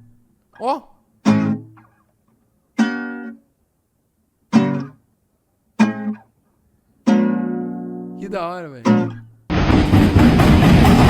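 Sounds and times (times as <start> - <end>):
guitar chords strummed: 1.2 - 1.9, 4.5 - 5.0, 5.8 - 6.2, 7.0 - 11.0.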